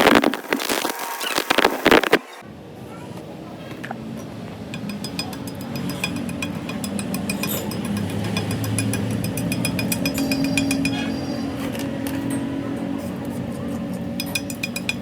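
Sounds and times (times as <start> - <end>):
metallic tapping and clinking: 4.7 - 15.0.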